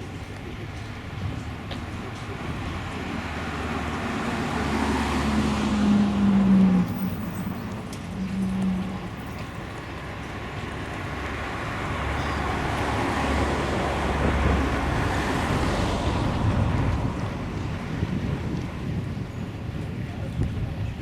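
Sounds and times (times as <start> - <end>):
vehicle driving past: 2.3 - 18.3.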